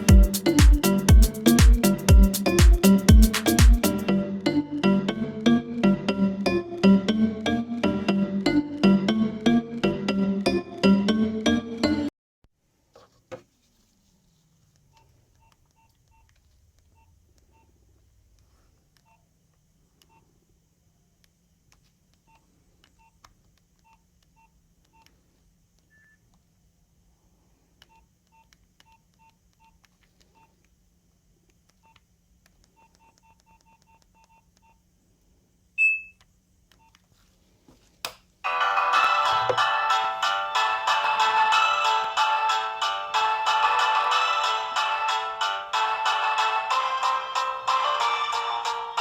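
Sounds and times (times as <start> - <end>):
keypad beeps: 25.9 - 26.2, 35.8 - 36.2
loud high beep: 35.8 - 36.2.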